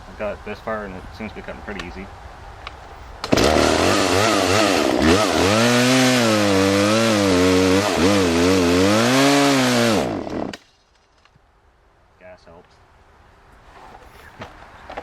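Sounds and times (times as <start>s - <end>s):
chainsaw cutting through log: 3.2s - 10.6s.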